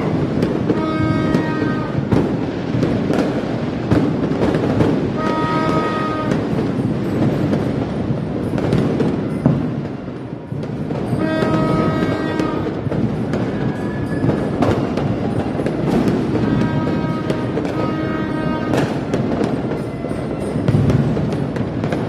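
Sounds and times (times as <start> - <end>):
fireworks and firecrackers popping: 0.0 - 22.0
horn blasts: 0.6 - 2.2, 5.1 - 6.6, 11.0 - 13.0, 15.9 - 20.7.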